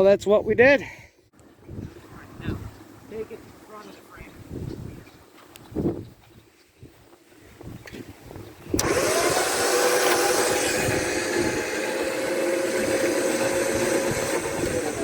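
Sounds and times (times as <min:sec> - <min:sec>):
winch motor whine: 0:08.8 - 0:15.0.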